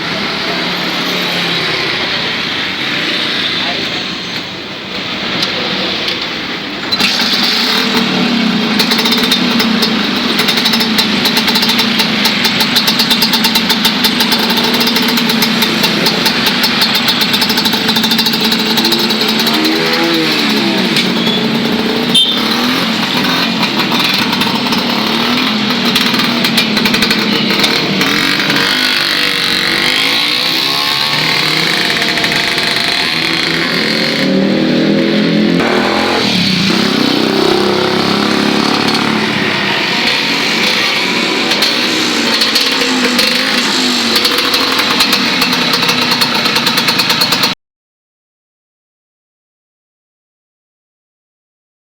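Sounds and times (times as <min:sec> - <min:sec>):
scooter engine revving: 0:00.0 - 0:47.6.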